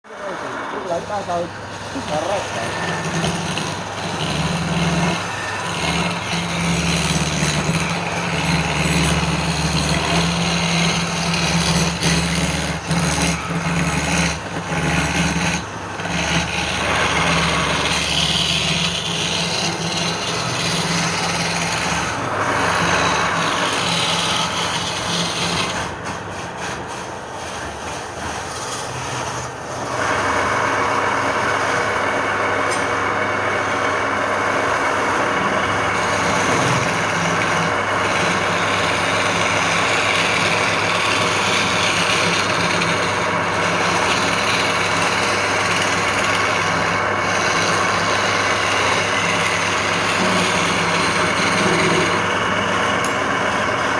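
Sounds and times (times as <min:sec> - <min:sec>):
lathe motor hum: 0:00.0 - 0:53.9
turning tool cutting wood: 0:00.1 - 0:53.9.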